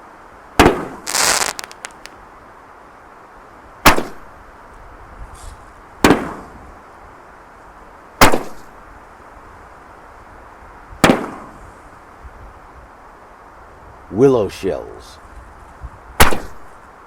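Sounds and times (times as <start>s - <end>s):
firework shells banging: 1.1s - 2.1s.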